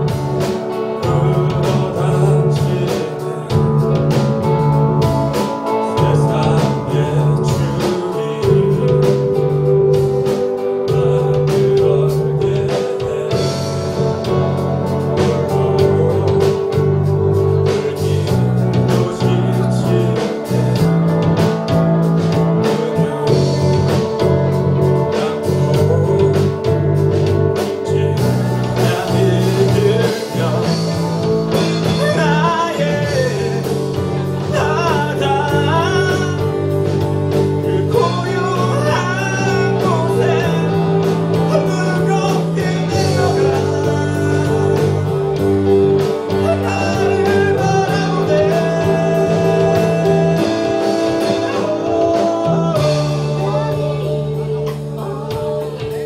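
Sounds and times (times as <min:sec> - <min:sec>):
band playing live: 0:00.0 - 0:56.0
held bass notes: 0:00.0 - 0:56.0
lead singer: 0:00.0 - 0:56.0.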